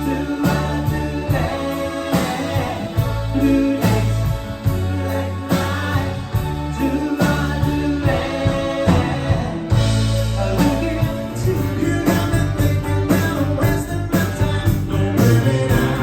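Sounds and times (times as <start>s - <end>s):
live rock band playing: 0.0s - 16.0s.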